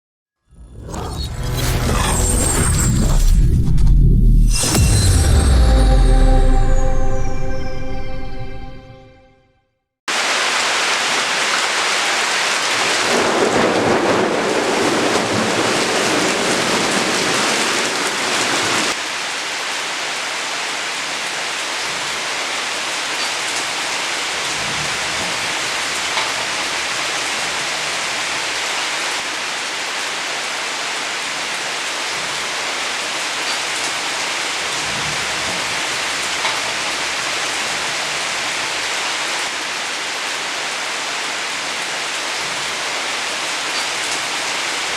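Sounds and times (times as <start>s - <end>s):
heavy rain pouring: 10.1s - 44.9s
thunder rolling: 12.8s - 19.0s.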